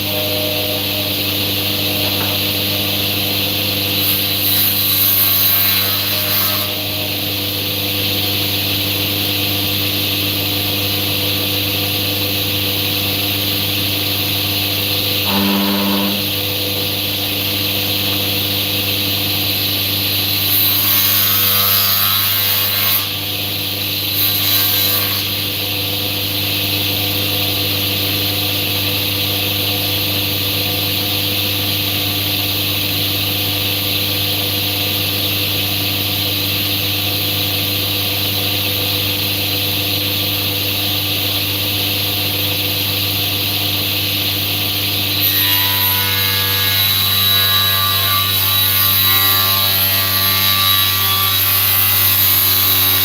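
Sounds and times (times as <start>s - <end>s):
woodworking machine motor humming: 0.0s - 4.1s, 15.2s - 16.6s.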